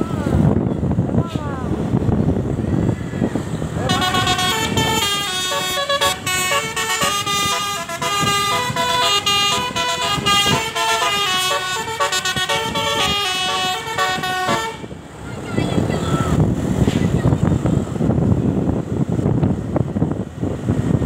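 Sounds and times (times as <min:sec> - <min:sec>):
musical air horn playing a tune: 0:03.8 - 0:14.9.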